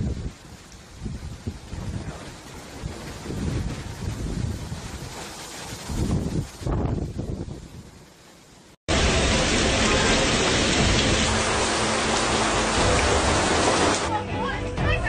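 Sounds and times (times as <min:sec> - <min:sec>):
heavy rain with wind: 0:00.0 - 0:15.0.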